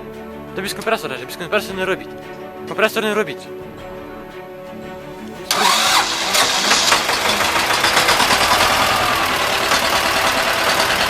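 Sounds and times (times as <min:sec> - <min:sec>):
tractor diesel engine running: 0:05.5 - 0:11.0.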